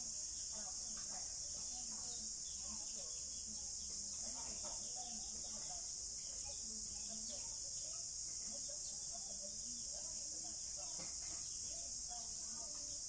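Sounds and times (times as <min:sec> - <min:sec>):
high-pitched insect chorus: 0:00.0 - 0:13.0.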